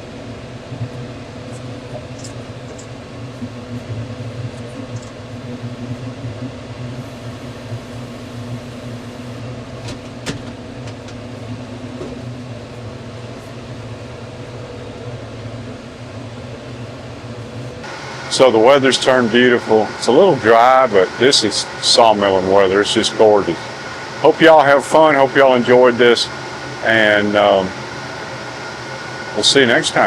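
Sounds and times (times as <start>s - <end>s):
sawmill engine humming: 17.2s - 30.0s.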